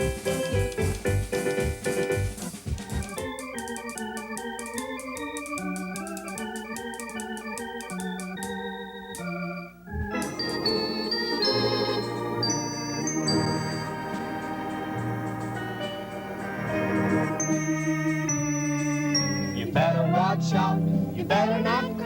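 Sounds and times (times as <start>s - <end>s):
organ playing a quick melody: 0.0s - 21.4s.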